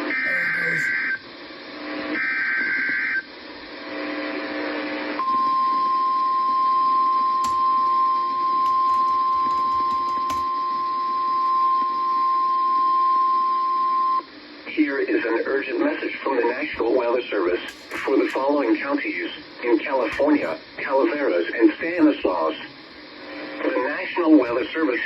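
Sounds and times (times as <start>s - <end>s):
steady single-pitch alarm tone: 5.2s - 14.2s.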